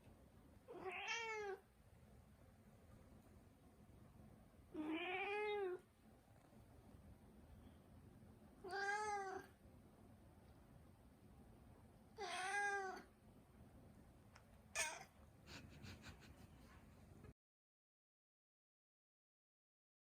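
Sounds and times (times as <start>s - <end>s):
cat meowing: 0.7s - 1.6s, 4.8s - 5.8s, 8.6s - 9.5s, 12.2s - 13.1s, 14.8s - 15.1s.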